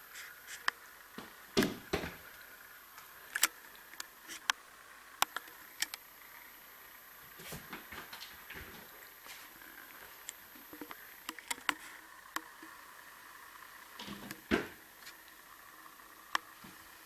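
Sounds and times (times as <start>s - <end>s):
steady hiss: 0.0s - 17.0s.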